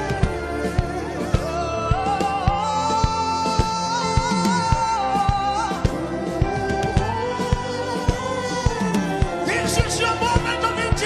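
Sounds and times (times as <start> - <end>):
gospel band with steady drum beat: 0.0 - 11.0.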